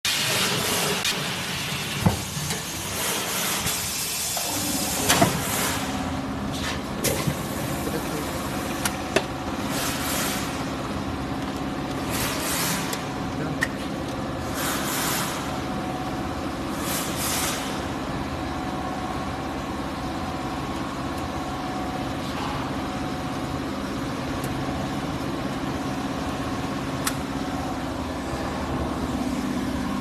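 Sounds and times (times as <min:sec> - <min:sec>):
machine motor hum: 0:17.7 - 0:30.0.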